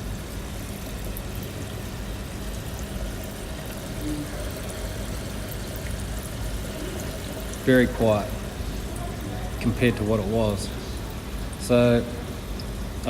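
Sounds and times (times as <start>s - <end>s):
faint pump hum: 0.0s - 13.0s
water flowing down drain: 0.0s - 13.0s.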